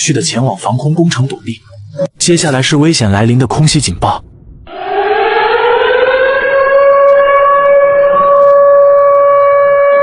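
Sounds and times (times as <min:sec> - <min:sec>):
air-raid siren wailing: 0:04.7 - 0:10.0.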